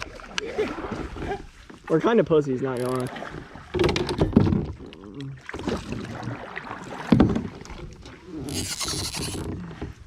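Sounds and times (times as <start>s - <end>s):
knocks against a kayak: 3.7s - 4.8s, 7.0s - 7.8s.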